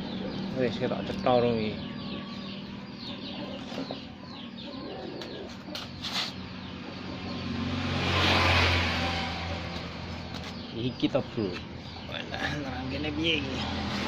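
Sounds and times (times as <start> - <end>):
chickens clucking: 0.0 - 7.4.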